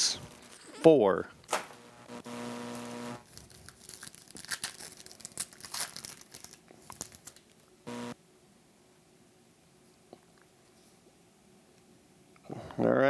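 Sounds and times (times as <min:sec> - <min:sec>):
wrapper tearing and crinkling: 0:00.0 - 0:00.6, 0:03.2 - 0:07.8.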